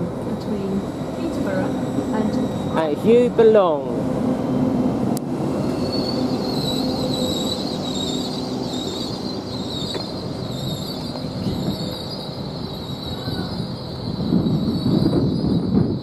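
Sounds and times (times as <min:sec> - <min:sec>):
train rumbling: 0:00.0 - 0:16.0
train wheels squealing: 0:01.4 - 0:03.1, 0:05.5 - 0:16.0.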